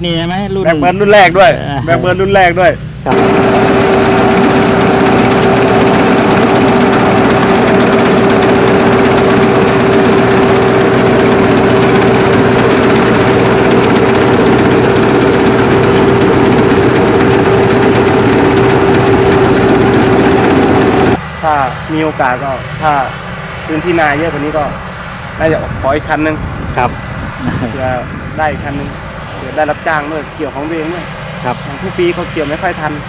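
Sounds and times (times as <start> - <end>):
combine harvester engine drone: 0.0 - 33.0
machinery whine: 2.0 - 25.3.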